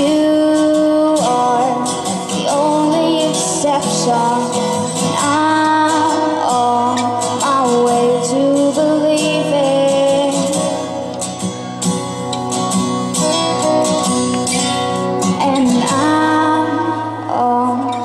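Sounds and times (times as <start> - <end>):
woman singing: 0.0 - 11.0, 15.2 - 18.0
strummed acoustic guitar: 0.0 - 18.0.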